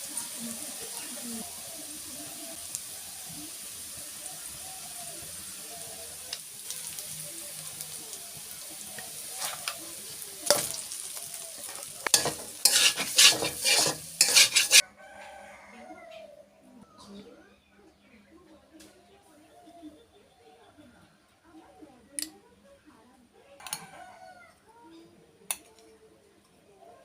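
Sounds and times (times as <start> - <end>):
food sizzling in oil: 0.0 - 14.8
utensil scraping a pan: 9.0 - 10.9, 11.5 - 14.8.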